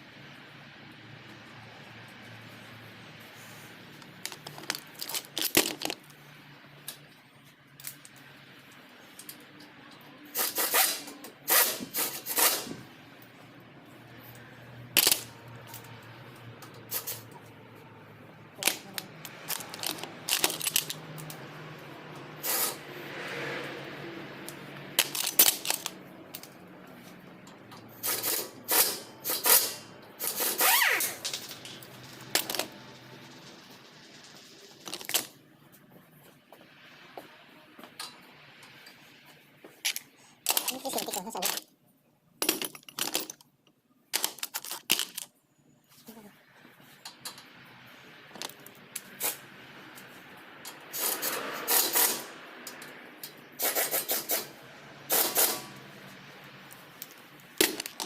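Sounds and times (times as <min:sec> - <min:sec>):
metal tools clinking and clanking: 0:42.4 - 0:43.4.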